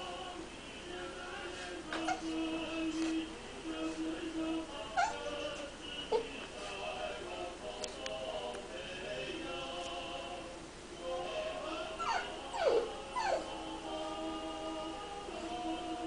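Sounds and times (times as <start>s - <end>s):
background music: 0.0s - 16.0s
pet whimpering cries: 2.0s - 2.3s, 5.0s - 5.5s, 12.0s - 13.5s.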